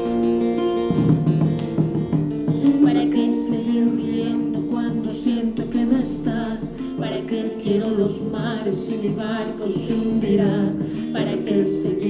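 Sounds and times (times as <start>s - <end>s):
wavering singing voice: 2.5s - 12.0s.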